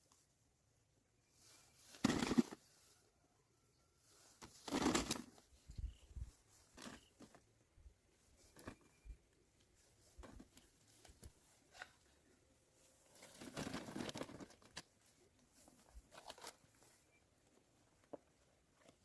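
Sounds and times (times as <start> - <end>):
rustling and crinkling: 1.3 - 3.0, 4.0 - 19.0.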